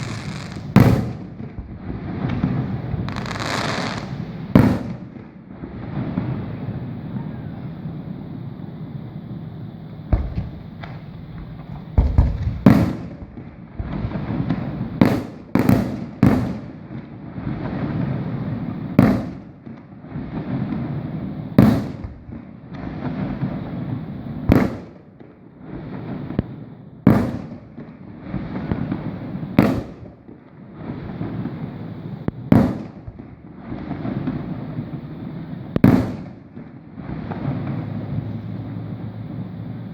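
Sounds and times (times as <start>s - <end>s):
low rolling echo: 0.0s - 16.8s
fireworks booming: 0.0s - 39.9s.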